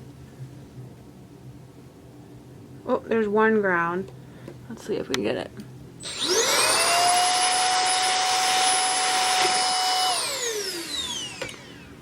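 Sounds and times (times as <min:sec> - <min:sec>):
vacuum cleaner motor whine: 0:06.0 - 0:12.0.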